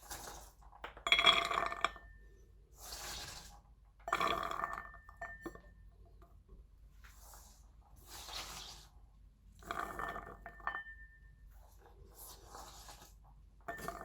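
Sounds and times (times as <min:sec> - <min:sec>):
soft rustle: 0:11.6 - 0:13.4.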